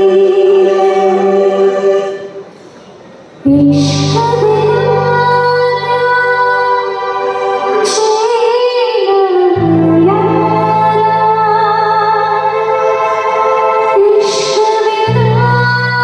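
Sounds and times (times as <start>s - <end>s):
woman singing wavering melody: 0.0s - 2.4s, 3.5s - 16.0s
sustained low chords: 3.5s - 7.8s, 9.5s - 14.2s.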